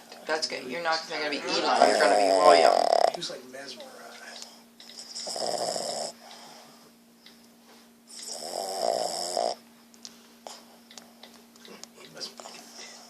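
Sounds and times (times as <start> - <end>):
faint steady hum: 0.0 - 13.0
dog snoring: 1.7 - 6.7, 8.1 - 9.6.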